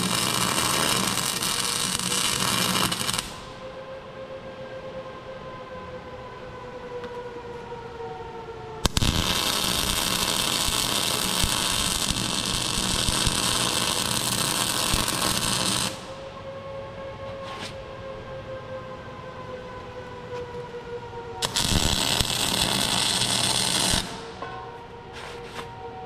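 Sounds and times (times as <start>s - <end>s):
welding arc crackling hiss: 0.0s - 3.5s, 8.8s - 16.1s, 21.4s - 24.3s.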